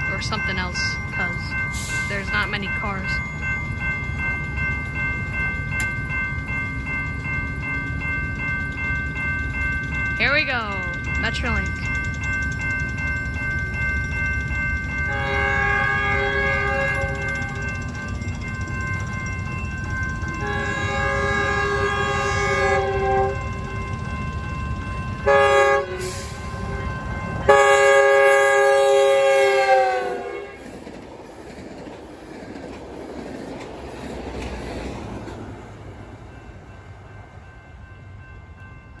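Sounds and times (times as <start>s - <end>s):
train rumble: 0.0s - 39.0s
train horn blasts: 15.1s - 17.6s, 20.4s - 23.6s, 25.2s - 30.6s.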